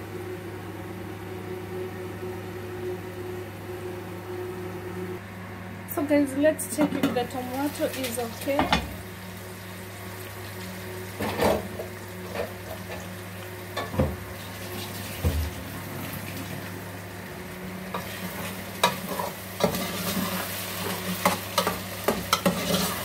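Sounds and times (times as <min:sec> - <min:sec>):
steady low hum: 0:00.0 - 0:23.0
food sizzling in a pan: 0:07.5 - 0:17.1, 0:17.9 - 0:23.0.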